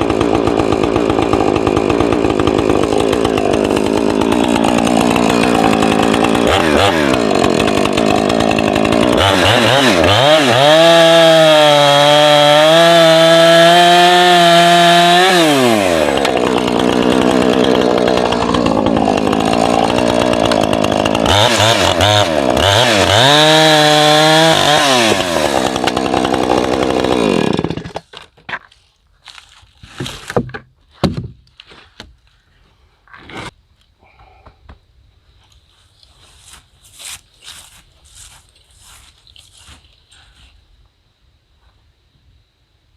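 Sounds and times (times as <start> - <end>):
chainsaw cutting timber: 0.0 - 28.3, 36.0 - 40.5.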